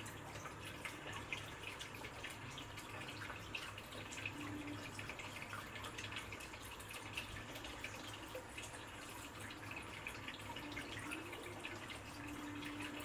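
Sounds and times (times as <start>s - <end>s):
water dripping and trickling: 0.0s - 13.0s.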